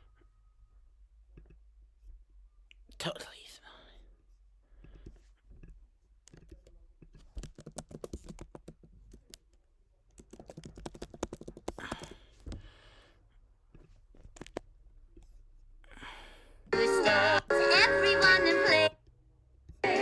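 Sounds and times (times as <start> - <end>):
small clicks and taps: 4.8 - 12.6, 13.7 - 15.3.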